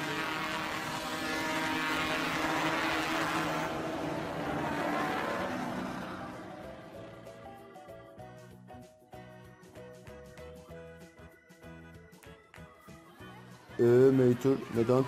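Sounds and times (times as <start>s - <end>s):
vehicle engine running: 0.0s - 7.8s.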